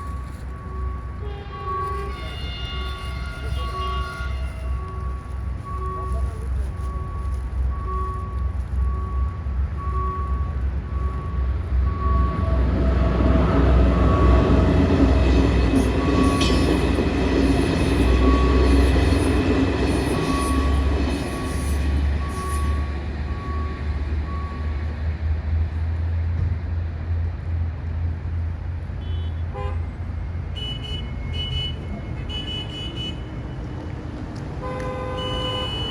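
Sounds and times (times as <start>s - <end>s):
passenger train rumbling past: 0.0s - 30.5s
short beeps: 4.7s - 12.6s, 22.2s - 24.7s.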